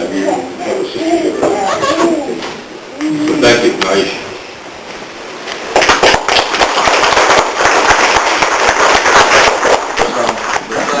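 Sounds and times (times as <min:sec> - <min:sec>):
audience applauding: 0:05.7 - 0:11.0.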